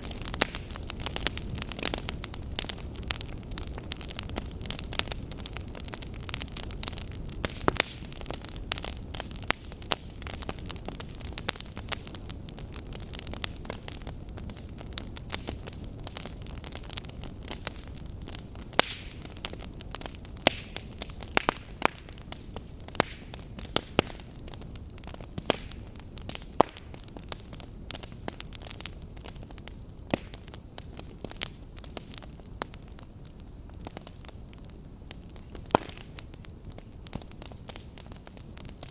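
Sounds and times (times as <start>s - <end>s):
campfire crackling and popping: 0.0s - 38.9s.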